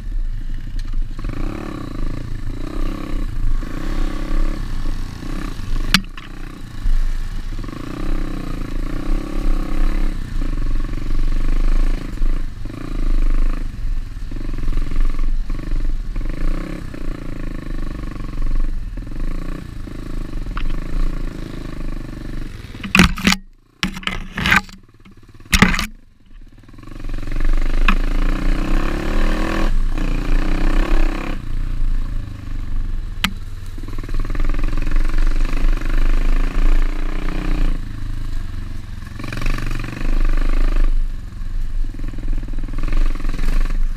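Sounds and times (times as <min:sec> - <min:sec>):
pit bike engine revving: 0:00.0 - 0:43.9
sharp knocks: 0:22.8 - 0:24.8.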